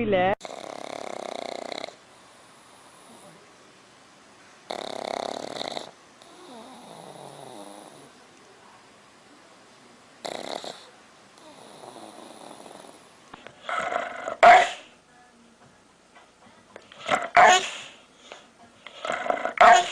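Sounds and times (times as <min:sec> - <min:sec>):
dog snorting: 0:00.4 - 0:03.4, 0:04.7 - 0:08.2, 0:10.2 - 0:14.9, 0:16.8 - 0:19.9
dog snoring: 0:00.4 - 0:03.5, 0:04.7 - 0:08.2, 0:10.2 - 0:14.8, 0:18.9 - 0:19.9.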